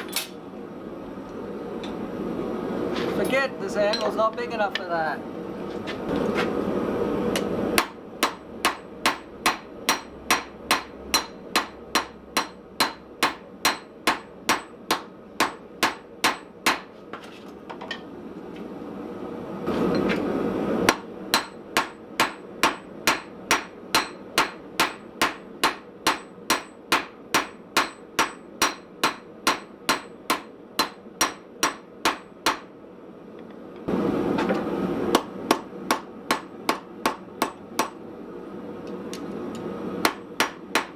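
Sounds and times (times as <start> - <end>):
hammer striking steel on anvil: 7.4 - 16.9, 20.9 - 32.7, 35.1 - 38.0, 40.0 - 40.9.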